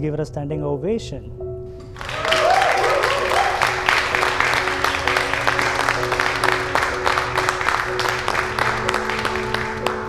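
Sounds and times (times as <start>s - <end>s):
background music with long notes: 0.0s - 10.0s
people applauding: 1.8s - 10.0s.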